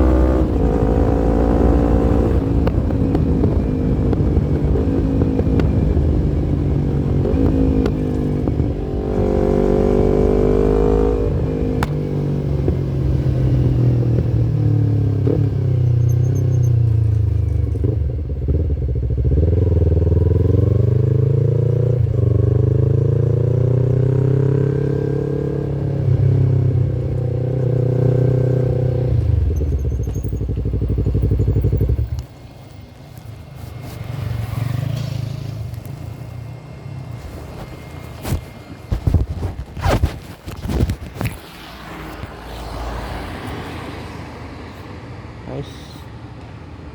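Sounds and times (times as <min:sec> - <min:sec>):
motorcycle engine revving: 0:00.0 - 0:32.3.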